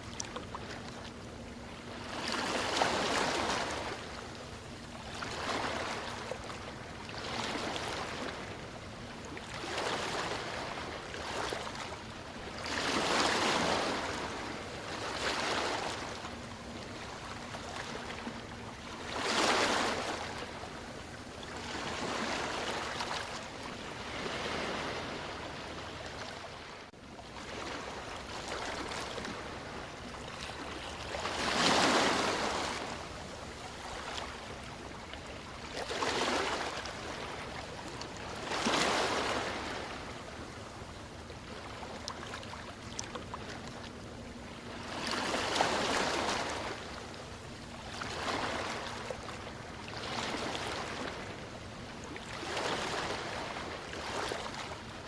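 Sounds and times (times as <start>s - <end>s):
sea waves washing in: 19.0s - 26.7s.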